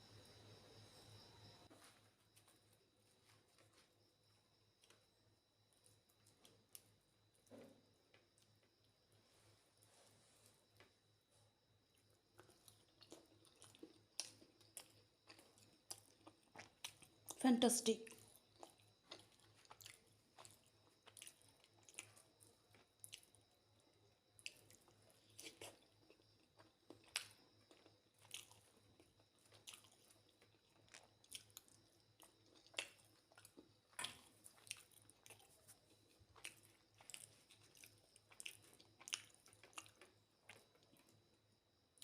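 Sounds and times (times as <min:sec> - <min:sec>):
wet chewing clicks and smacks: 0:11.9 - 0:17.4, 0:18.0 - 0:41.3.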